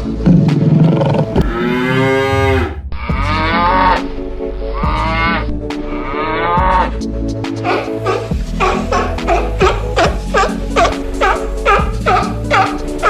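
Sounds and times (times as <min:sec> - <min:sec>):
cow mooing: 0:00.9 - 0:04.1, 0:04.8 - 0:07.0.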